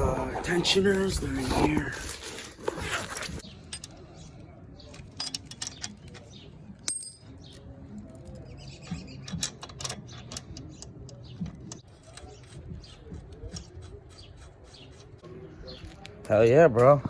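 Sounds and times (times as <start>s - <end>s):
small metal parts rattling: 4.9s - 7.5s
sharp metallic clink: 6.9s - 7.4s.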